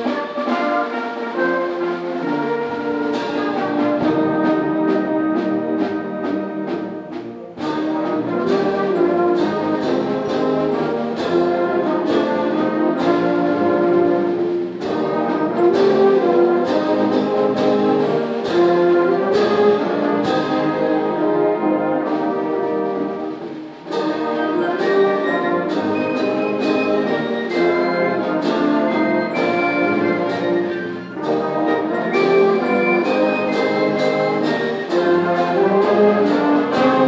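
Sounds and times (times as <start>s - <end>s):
brass holding notes: 0.0s - 37.0s
concert band playing a march: 0.0s - 37.0s
percussion strokes: 0.0s - 37.0s.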